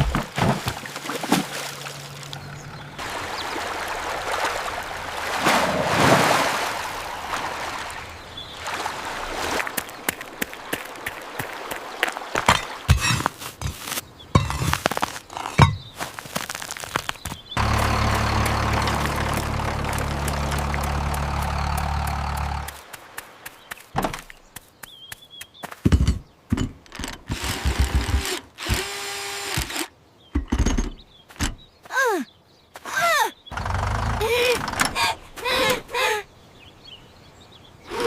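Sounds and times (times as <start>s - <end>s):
small motor running: 17.6s - 22.8s, 27.3s - 29.9s.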